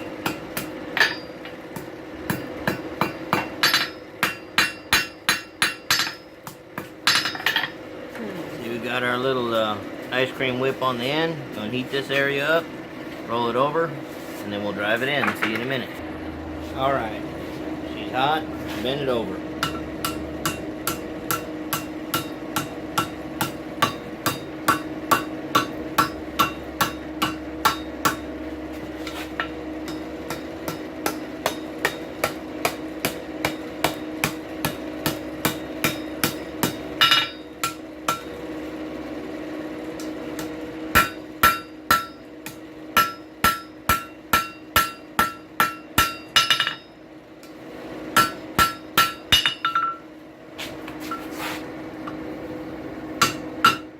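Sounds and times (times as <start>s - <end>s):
hammer ringing on anvil: 0.0s - 7.8s, 19.6s - 28.3s, 29.4s - 38.4s, 40.0s - 47.0s, 48.2s - 50.1s, 53.2s - 53.9s
steady hum: 0.0s - 53.9s.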